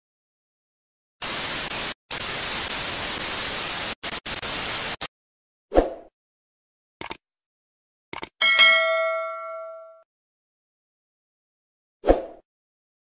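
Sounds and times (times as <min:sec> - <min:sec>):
double click: 0:08.1 - 0:08.4.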